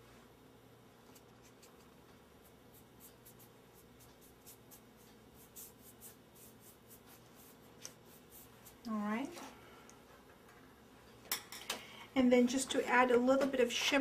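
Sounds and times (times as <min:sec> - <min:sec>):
dry brush strokes: 0:01.1 - 0:09.0.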